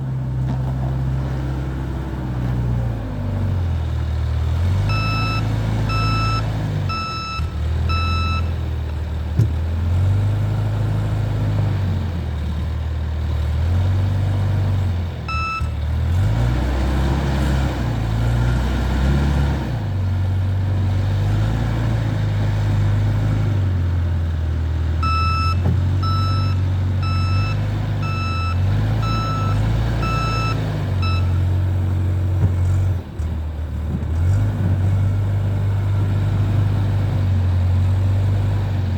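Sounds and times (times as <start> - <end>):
loader engine changing speed: 0.0 - 38.9
reversing alarm beeps: 4.9 - 8.5, 15.3 - 15.7, 25.0 - 31.4.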